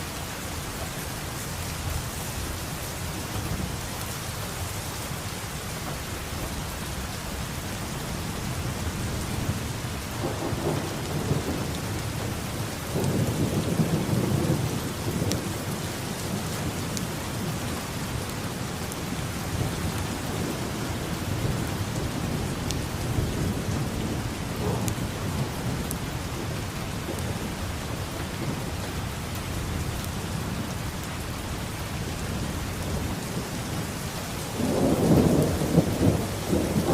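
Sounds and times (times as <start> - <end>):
heavy rain: 0.0 - 36.9
thunder rumbling: 8.5 - 31.0, 32.0 - 36.9.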